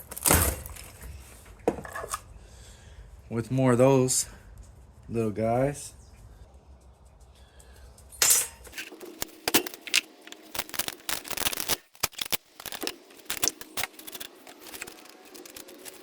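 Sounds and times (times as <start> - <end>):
metal parts clicking and clattering: 8.1 - 16.0.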